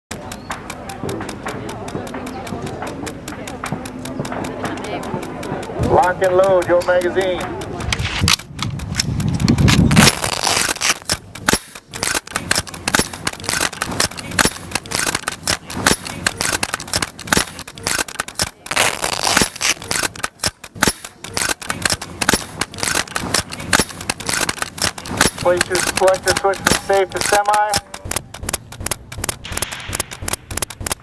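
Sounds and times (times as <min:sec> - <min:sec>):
rifles firing: 0:09.6 - 0:31.0.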